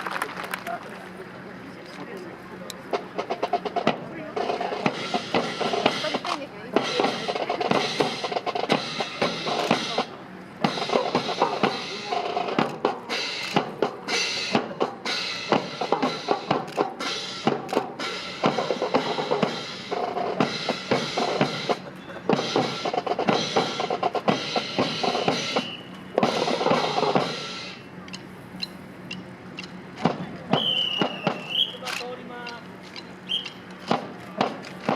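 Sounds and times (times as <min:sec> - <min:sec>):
snare drum rolls: 0:02.9 - 0:27.6, 0:30.0 - 0:32.1.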